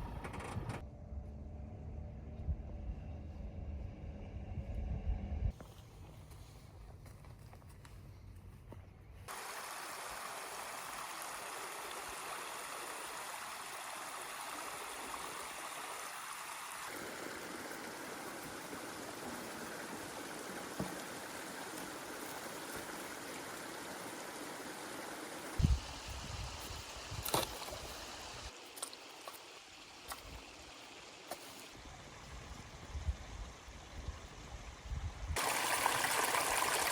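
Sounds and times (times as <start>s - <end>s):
low rumble: 0.0s - 5.5s
stream water rushing: 9.3s - 31.8s, 35.4s - 36.9s.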